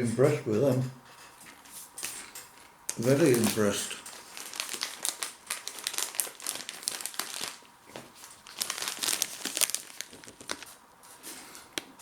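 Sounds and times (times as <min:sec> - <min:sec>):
plastic snack packet crinkling: 0:02.0 - 0:10.8.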